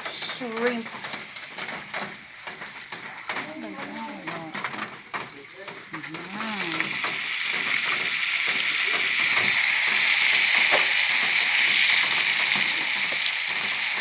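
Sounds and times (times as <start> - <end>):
shrimp sizzling in a pan: 5.4 - 14.0.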